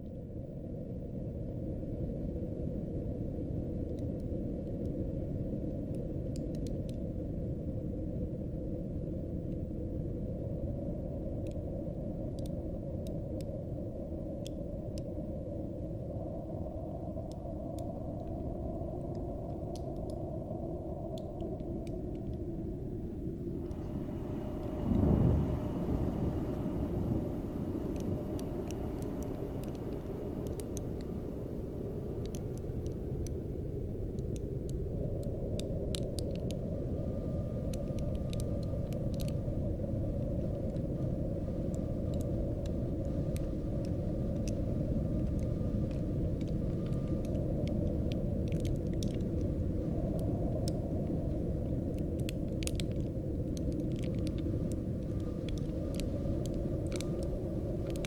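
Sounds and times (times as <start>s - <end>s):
frost crackling ticks: 5.6s - 7.2s, 11.3s - 13.6s, 14.2s - 15.2s, 17.1s - 20.3s, 20.9s - 22.9s, 23.5s - 58.0s
mountain wind rumbling: 7.2s - 58.0s
faint thin wind whistle: 23.4s - 35.4s.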